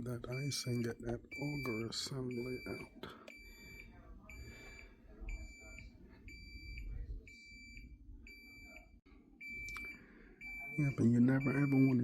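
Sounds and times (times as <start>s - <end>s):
refrigerator alarm beeping: 0.0s - 12.0s.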